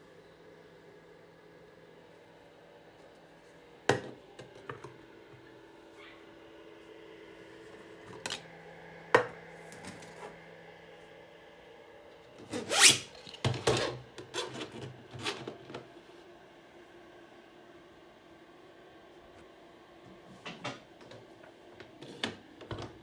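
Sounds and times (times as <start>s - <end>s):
scrape and rustle: 12.4s - 15.6s.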